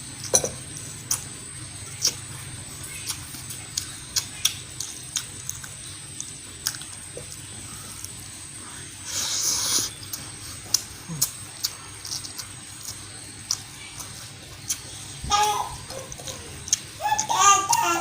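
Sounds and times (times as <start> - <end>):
wet chewing and lip smacks: 2.9 - 7.4, 9.9 - 14.9.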